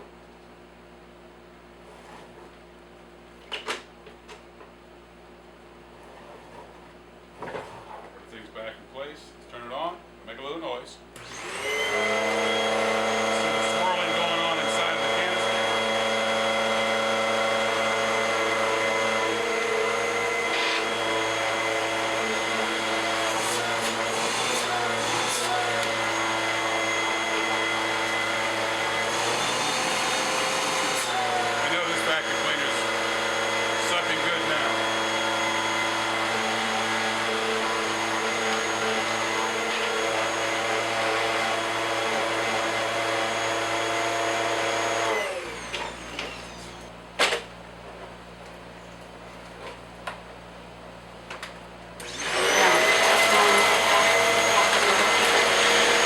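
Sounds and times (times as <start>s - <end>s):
vacuum cleaner motor hum: 11.2s - 47.0s, 52.0s - 56.0s.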